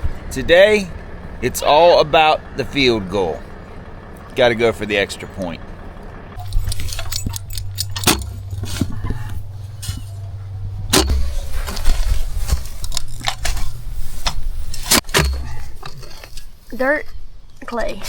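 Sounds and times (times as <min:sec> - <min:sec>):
engine running: 0:00.0 - 0:18.0
metallic clanks and knocks: 0:06.4 - 0:16.5.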